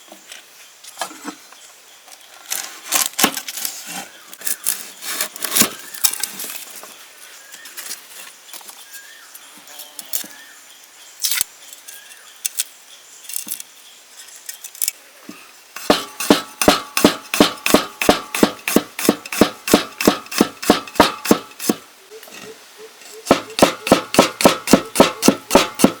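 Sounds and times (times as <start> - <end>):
knife chopping on cutting board: 15.8 - 21.8, 23.3 - 26.0
scattered clicks and knocks: 15.8 - 21.8, 23.3 - 26.0.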